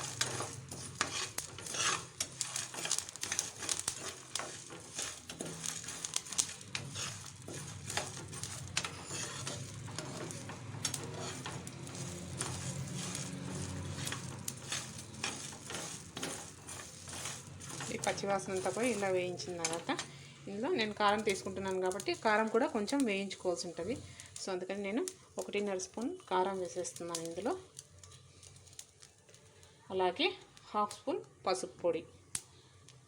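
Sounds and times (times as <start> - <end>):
spoon scraping pan: 0.0 - 24.3
soft sizzle: 0.0 - 33.0.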